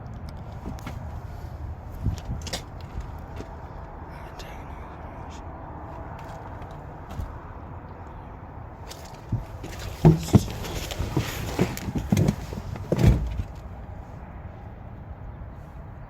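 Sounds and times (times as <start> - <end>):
knocks and thumps: 9.1 - 13.6.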